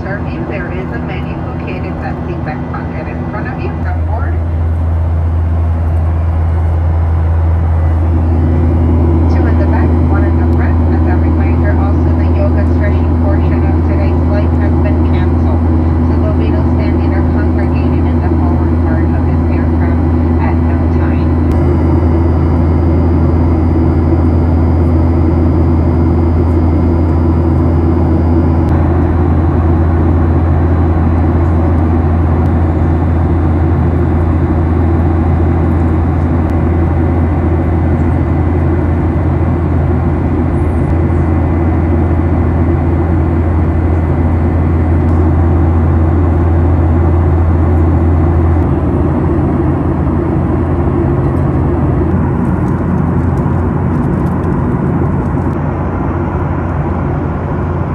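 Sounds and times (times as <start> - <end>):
faint steady tones: 0.0 - 29.2
airplane cabin jet engine drone: 0.0 - 57.9.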